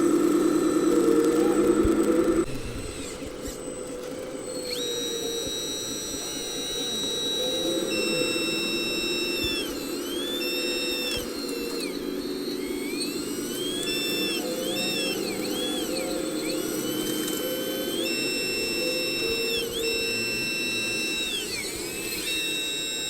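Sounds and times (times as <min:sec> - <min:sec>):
electric motor whine: 0:00.0 - 0:23.0.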